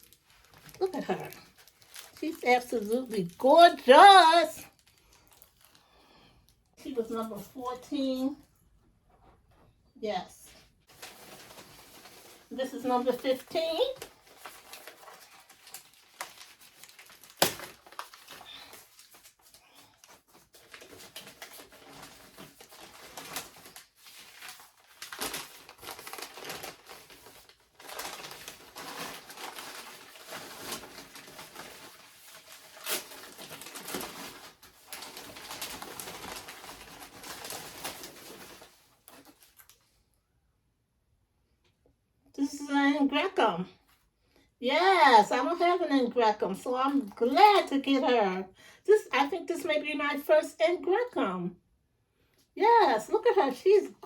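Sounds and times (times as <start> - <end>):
paper and plastic rustling: 0.0 - 6.2, 10.6 - 40.1.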